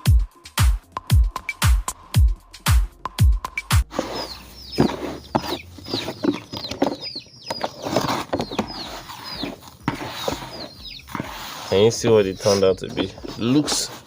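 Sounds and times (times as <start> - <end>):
dance music beat: 0.0 - 3.9
chickens clucking: 3.9 - 14.0
chicks peeping: 3.9 - 14.0.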